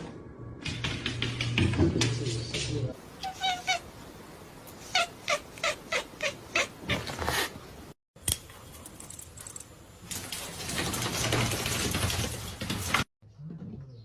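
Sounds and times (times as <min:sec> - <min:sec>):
cat meowing: 0:03.2 - 0:03.9, 0:04.8 - 0:07.1.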